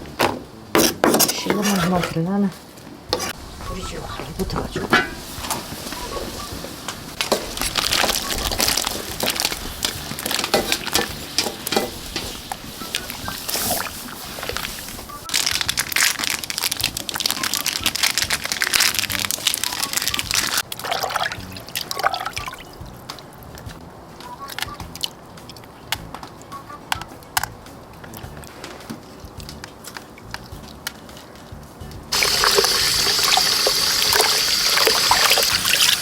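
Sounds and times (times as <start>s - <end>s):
liquid pouring and sloshing: 13.3s - 22.6s, 32.1s - 36.0s
small clicks and splashes: 15.4s - 23.2s.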